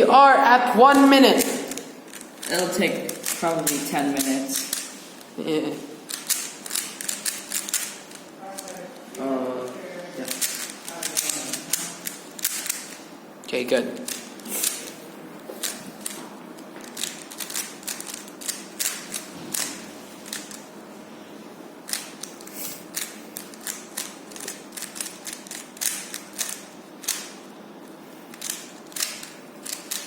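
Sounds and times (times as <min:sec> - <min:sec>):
plastic puzzle cube clicking: 0:01.4 - 0:04.9, 0:06.1 - 0:08.0, 0:10.3 - 0:13.0, 0:16.9 - 0:20.6, 0:23.0 - 0:27.3, 0:28.3 - 0:30.0.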